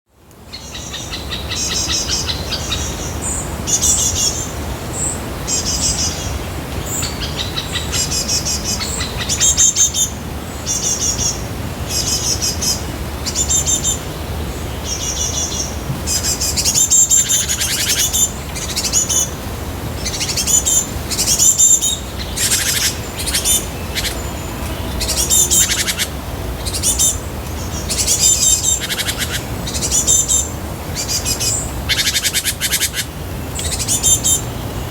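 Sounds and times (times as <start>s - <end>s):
songbirds chirping: 0.2s - 34.9s.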